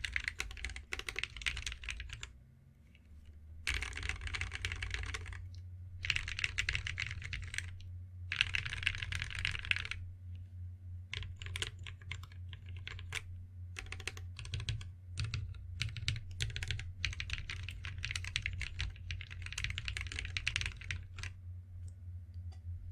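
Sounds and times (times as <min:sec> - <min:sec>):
typing on mechanical keyboard: 0:00.0 - 0:02.3, 0:03.7 - 0:05.4, 0:06.0 - 0:10.0, 0:11.1 - 0:21.3.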